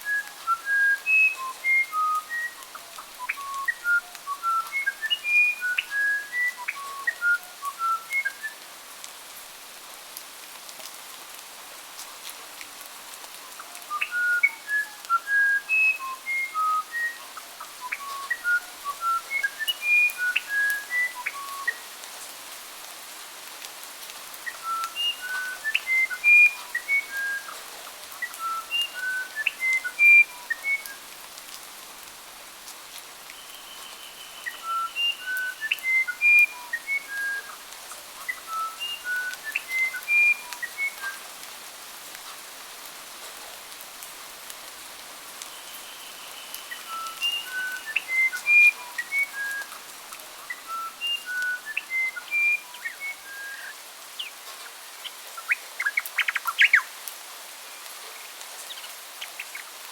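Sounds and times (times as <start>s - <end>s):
songbird whistling song: 0.0s - 8.6s, 13.5s - 21.8s, 24.4s - 27.6s, 28.2s - 31.0s, 33.3s - 41.2s, 45.5s - 56.9s, 58.2s - 59.7s
faint hiss: 0.0s - 59.9s.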